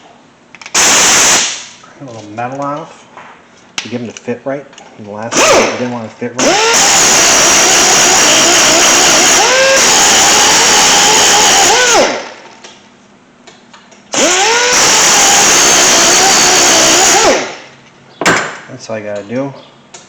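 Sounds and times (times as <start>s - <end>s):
electric grinder whining: 6.4s - 12.4s, 14.1s - 17.7s.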